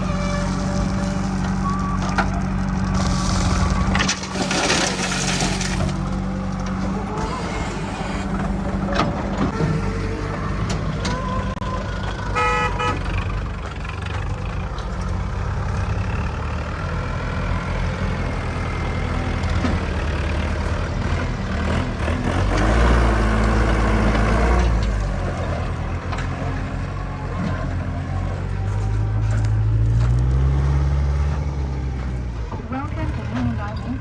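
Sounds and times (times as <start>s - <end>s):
diesel machinery engine running: 0.0s - 34.0s
short horn toot: 12.4s - 13.1s.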